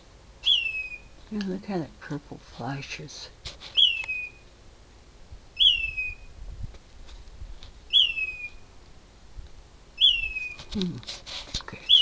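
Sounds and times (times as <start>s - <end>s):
bird whistling call: 0.4s - 1.1s, 3.7s - 4.4s, 5.6s - 6.3s, 7.9s - 8.6s, 10.0s - 10.7s.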